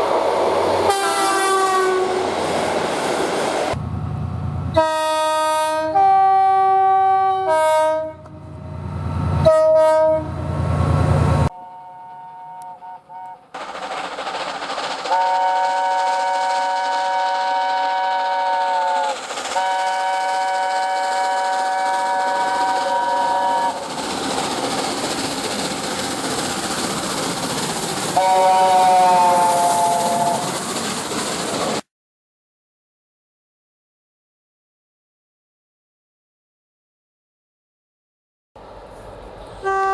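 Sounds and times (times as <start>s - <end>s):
train rumbling by: 0.0s - 31.9s, 38.6s - 39.9s
train horn blasts: 0.9s - 2.2s, 4.8s - 8.4s, 9.4s - 10.5s, 11.5s - 13.5s, 15.1s - 23.8s, 28.2s - 30.5s, 39.6s - 39.9s.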